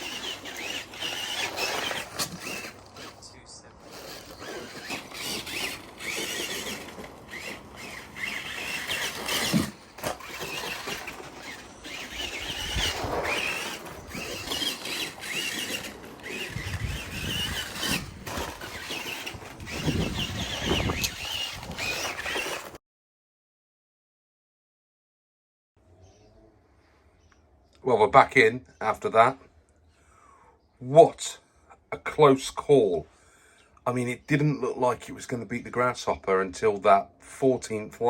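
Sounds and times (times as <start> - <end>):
rc car motor whining: 0.0 - 22.8.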